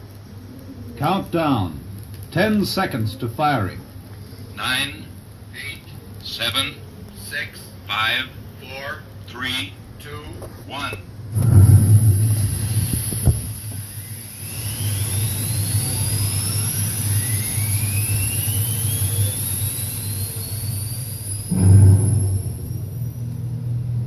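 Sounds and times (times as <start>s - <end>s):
rocket engines rumbling: 0.0s - 24.0s
rising whines: 11.2s - 24.0s.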